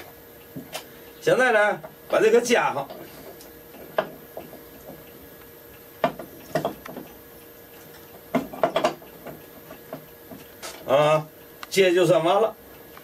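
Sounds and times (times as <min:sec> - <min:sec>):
wooden knocks and clunks: 0:06.0 - 0:07.1, 0:08.3 - 0:10.4.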